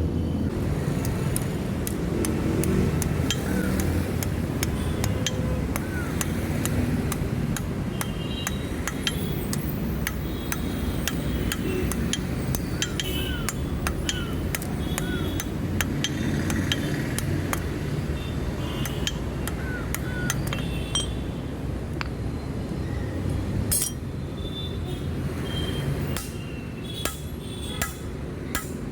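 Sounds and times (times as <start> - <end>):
hammer tapping on steel: 1.0 - 17.8, 18.8 - 21.2, 27.0 - 28.8.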